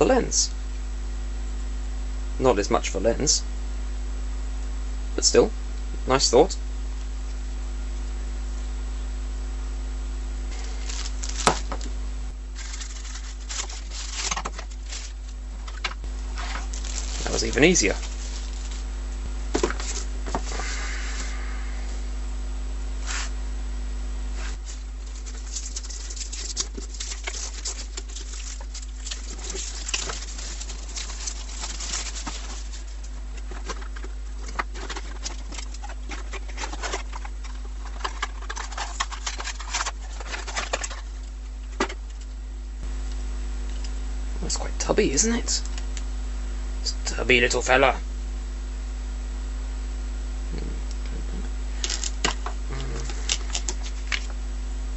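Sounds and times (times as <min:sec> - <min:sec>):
low electrical hum: 0:00.0 - 0:54.9
plastic packaging crinkling: 0:10.5 - 0:20.7, 0:24.4 - 0:42.3, 0:51.8 - 0:54.3.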